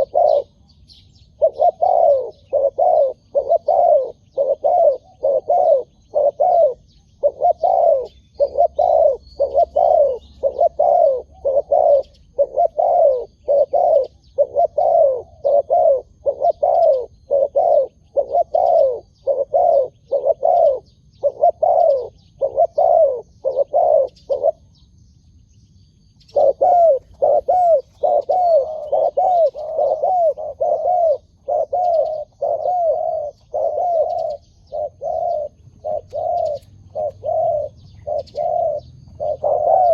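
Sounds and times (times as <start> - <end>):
doves cooing: 0.0 - 25.0, 26.2 - 39.9
small birds chirping: 0.0 - 39.9.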